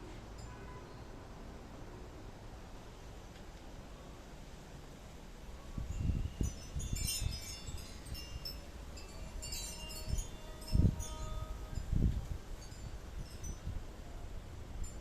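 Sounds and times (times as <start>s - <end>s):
wind buffeting microphone: 5.7s - 15.0s
wind chime tinkling: 5.9s - 13.7s.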